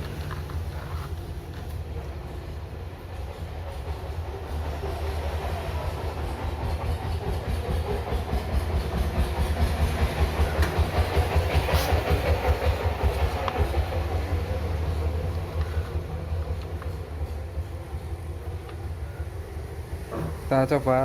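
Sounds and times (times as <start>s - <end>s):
hot air blower blowing: 8.4s - 16.2s.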